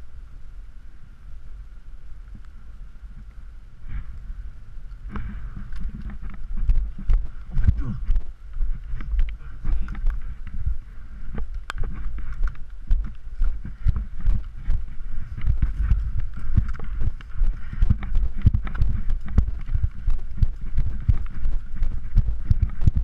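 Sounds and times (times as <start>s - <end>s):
footsteps: 5.0s - 23.0s
gear rustling: 5.0s - 23.0s.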